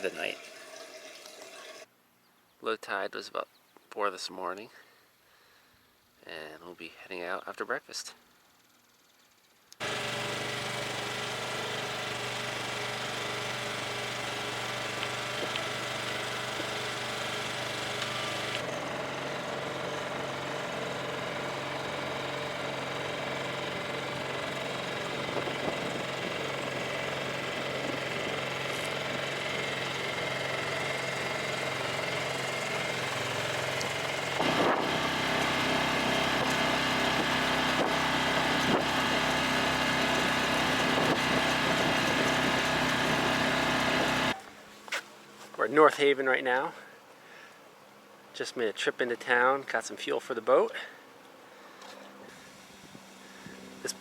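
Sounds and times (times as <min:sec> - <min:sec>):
boat motor humming: 0:09.8 - 0:44.5.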